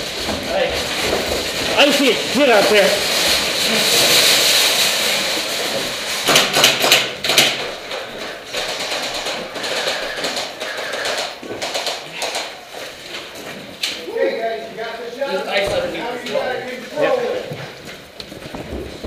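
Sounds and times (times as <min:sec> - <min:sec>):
shopping cart rattling over ground: 0:00.0 - 0:06.3, 0:07.3 - 0:13.8
sharp knocks: 0:06.2 - 0:12.6.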